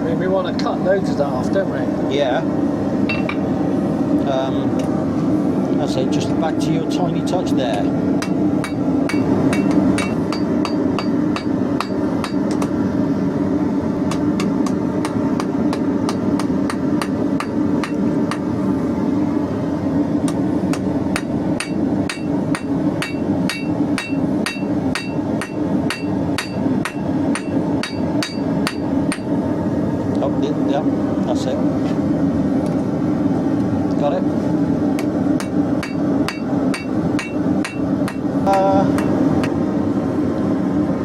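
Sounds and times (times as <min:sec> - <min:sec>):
hammer striking steel on anvil: 0:03.1 - 0:03.4, 0:07.7 - 0:12.8, 0:14.1 - 0:18.5, 0:20.3 - 0:29.3, 0:35.0 - 0:39.6.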